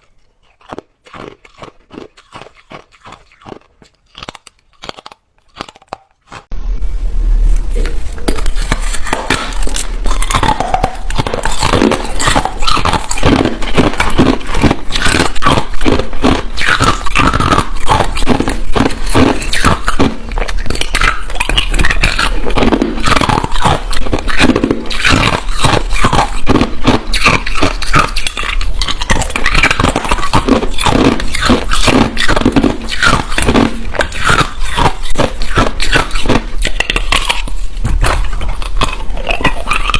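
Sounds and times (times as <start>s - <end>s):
low steady hum: 6.5s - 25.5s.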